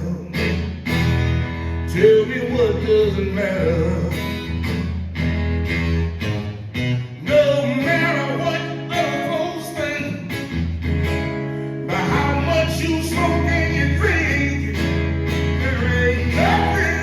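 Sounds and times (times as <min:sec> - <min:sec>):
man singing: 0:00.0 - 0:00.6, 0:01.9 - 0:04.5, 0:07.2 - 0:10.5, 0:11.8 - 0:17.0
acoustic guitar strumming: 0:00.0 - 0:17.0.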